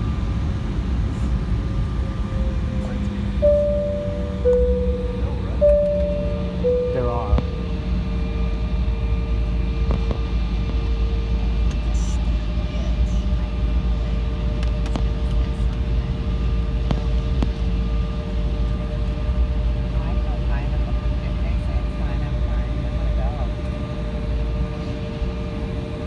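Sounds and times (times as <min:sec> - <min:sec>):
jet cabin rumble and whine: 0:00.0 - 0:26.0.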